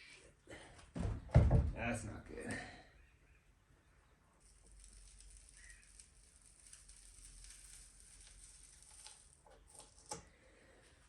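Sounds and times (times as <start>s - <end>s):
faint scratchy rustling: 4.4s - 10.1s.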